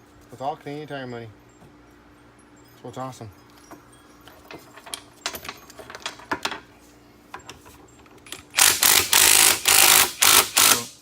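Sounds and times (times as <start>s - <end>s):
metal tools clinking: 2.2s - 10.8s
power tool running in bursts: 8.5s - 11.0s.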